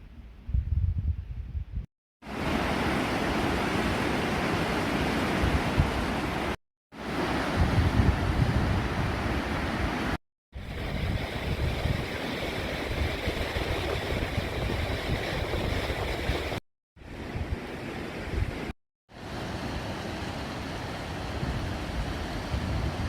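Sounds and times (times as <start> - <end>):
wind buffeting microphone: 0.0 - 1.9, 5.3 - 6.2, 7.4 - 18.7, 21.2 - 23.0.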